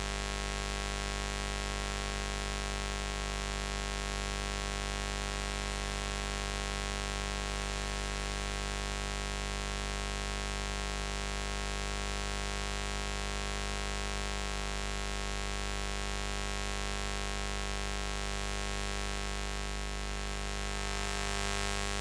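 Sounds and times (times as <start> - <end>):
continuous buzz: 20.7 - 22.0.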